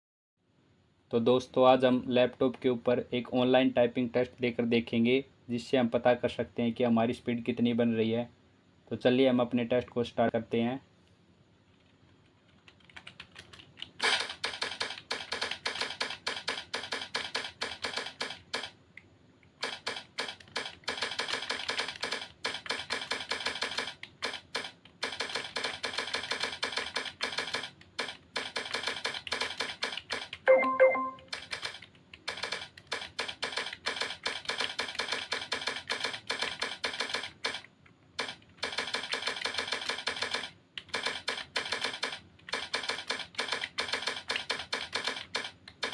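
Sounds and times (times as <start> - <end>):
laptop keyboard typing: 11.7 - 18.8, 19.6 - 45.9
brief pitched tone: 30.5 - 31.3.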